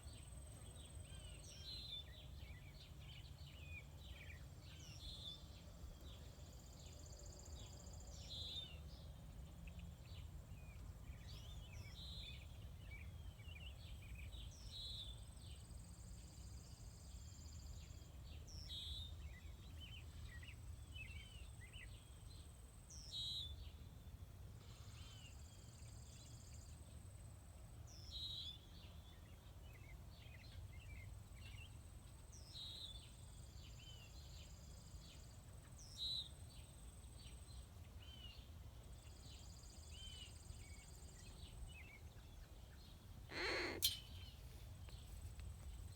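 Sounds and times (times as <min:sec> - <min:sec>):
bird chirping: 0:39.3 - 0:45.2.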